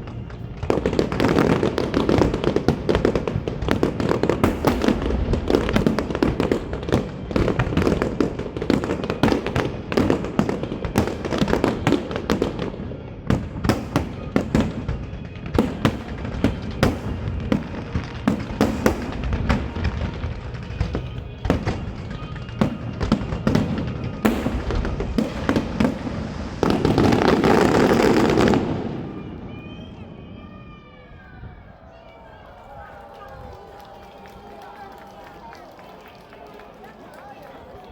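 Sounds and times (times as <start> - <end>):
fireworks bangs and crackles: 0.0 - 37.9.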